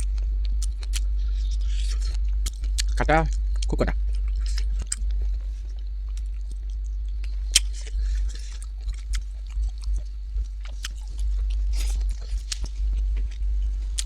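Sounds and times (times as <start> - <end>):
person chewing food: 0.0 - 14.0
steady low hum: 0.0 - 14.0
wet smacks and sharp clicks: 0.4 - 1.0, 2.1 - 5.2, 6.1 - 12.7.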